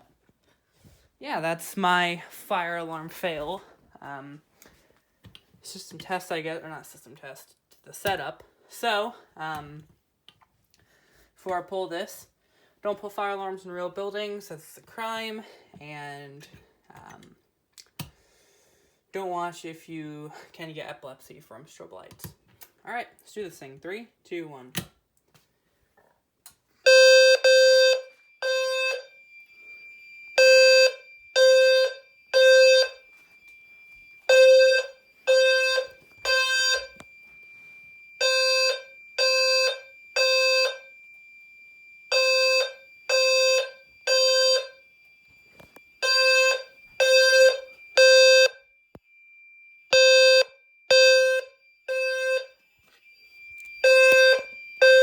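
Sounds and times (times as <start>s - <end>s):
fire alarm low buzzy beeps: 26.8s - 55.0s
steady high-pitched tone: 27.6s - 55.0s.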